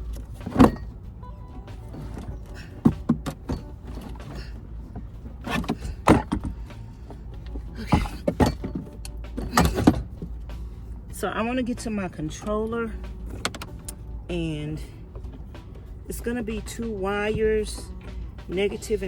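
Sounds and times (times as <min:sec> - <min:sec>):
equipment knocking and clunking: 0:00.0 - 0:11.1, 0:11.8 - 0:14.2, 0:14.9 - 0:19.0
steady low hum: 0:00.0 - 0:19.0.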